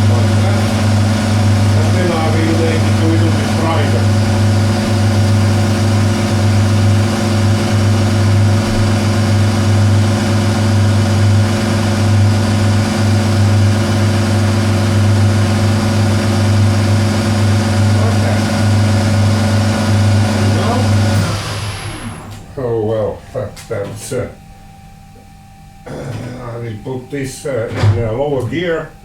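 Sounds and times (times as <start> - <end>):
lathe motor humming: 0.0 - 22.5.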